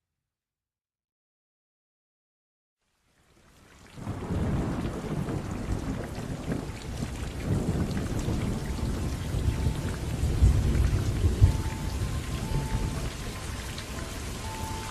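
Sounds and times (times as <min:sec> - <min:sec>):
steady rain: 0:02.8 - 0:14.9
thunder rumbling: 0:04.0 - 0:14.9.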